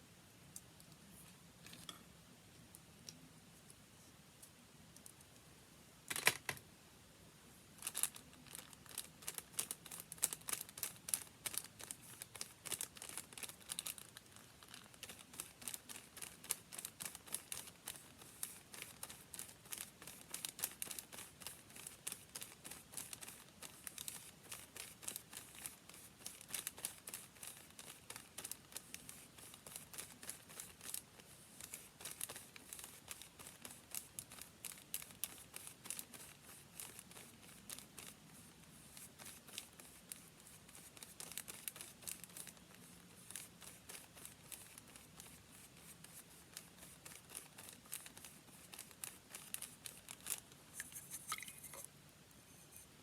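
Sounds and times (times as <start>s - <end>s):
paper crinkling: 7.8s - 51.8s.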